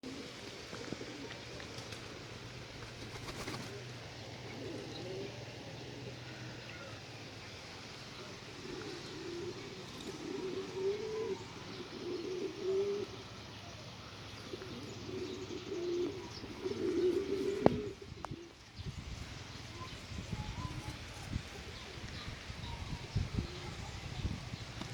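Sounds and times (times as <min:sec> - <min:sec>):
pigeons cooing: 0:00.0 - 0:24.9.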